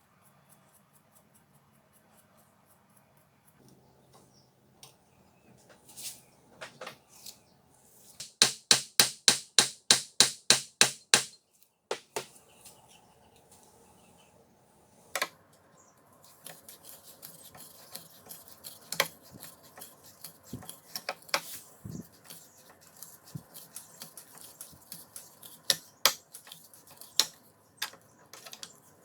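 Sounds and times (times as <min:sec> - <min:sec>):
small ticks and scrapes: 0:00.0 - 0:05.0, 0:05.6 - 0:06.3, 0:15.0 - 0:29.0
hammer tapping: 0:08.2 - 0:12.3.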